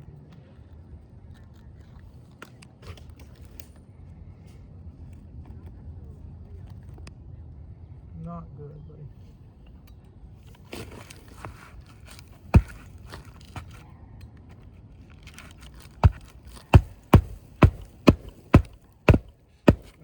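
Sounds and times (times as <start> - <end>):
shingle scraping and crackling: 10.6 - 13.8, 15.2 - 20.0
tool striking under shingle: 12.4 - 13.7, 15.8 - 20.0
sharp knock: 16.0 - 20.0.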